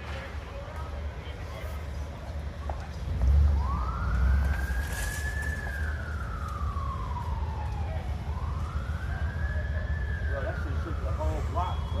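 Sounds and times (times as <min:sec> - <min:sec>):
siren wailing: 0:03.5 - 0:12.0.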